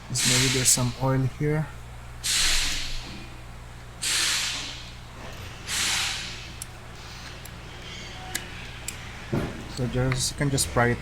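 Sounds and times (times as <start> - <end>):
hissing spray bursts: 2.2 - 3.0, 4.0 - 4.8, 5.7 - 6.5.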